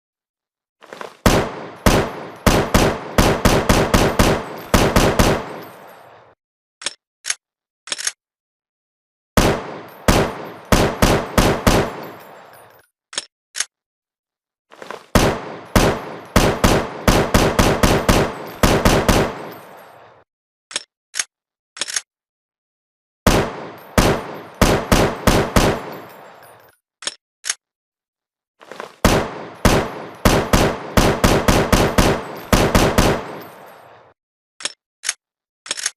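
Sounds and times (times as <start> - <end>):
automatic rifle fire: 1.2 - 5.7, 9.4 - 12.1, 15.2 - 19.6, 23.3 - 26.1, 29.0 - 33.6.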